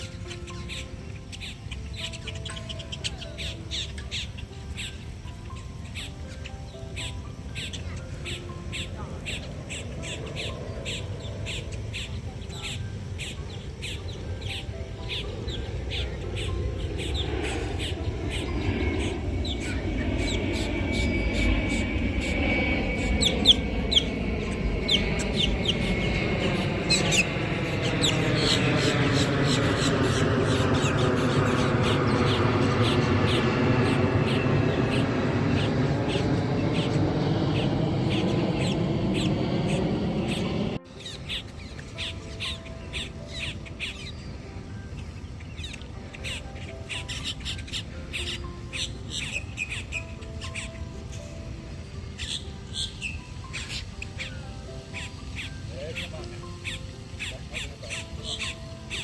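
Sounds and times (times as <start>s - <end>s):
small birds chirping: 0.0s - 59.0s
low rumble: 15.4s - 40.9s.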